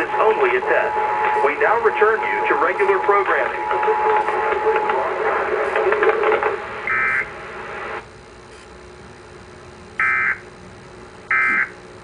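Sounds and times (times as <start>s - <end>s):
crackly static noise: 0.0s - 12.0s
digital data tone bursts: 6.9s - 7.3s, 11.3s - 11.8s.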